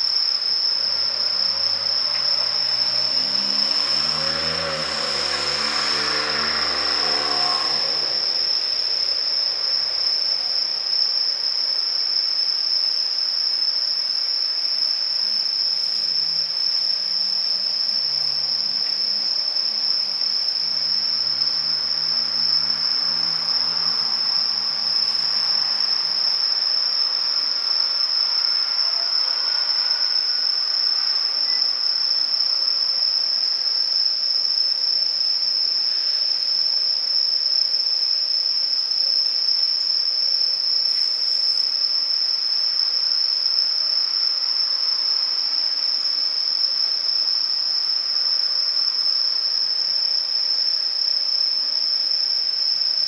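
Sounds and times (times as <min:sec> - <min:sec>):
crickets chirring: 0:00.0 - 0:53.0
train traction motors whining: 0:01.2 - 0:10.6.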